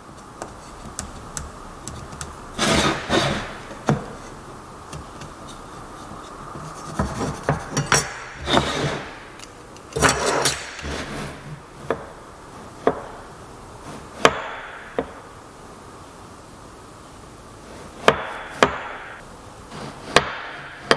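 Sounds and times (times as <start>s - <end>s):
wood scraping on wood: 0.0s - 15.2s, 19.6s - 20.9s.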